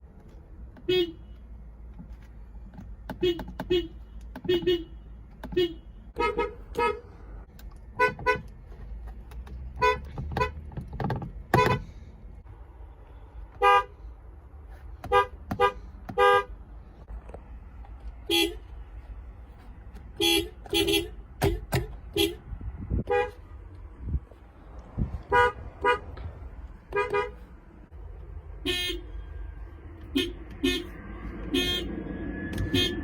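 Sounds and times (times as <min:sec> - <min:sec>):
car horns tooting: 0:00.8 - 0:01.5, 0:03.1 - 0:07.2, 0:07.9 - 0:08.6, 0:09.7 - 0:12.0, 0:13.2 - 0:14.1, 0:14.9 - 0:16.6, 0:18.2 - 0:18.9, 0:19.9 - 0:23.5, 0:25.2 - 0:26.2, 0:26.8 - 0:27.4, 0:28.5 - 0:33.0.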